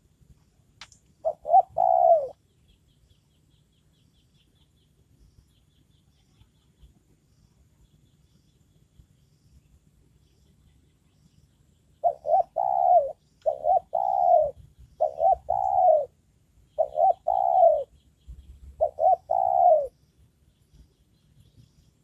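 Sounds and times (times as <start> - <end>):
dove cooing: 1.2 - 2.4, 12.0 - 16.2, 16.8 - 18.0, 18.6 - 20.0.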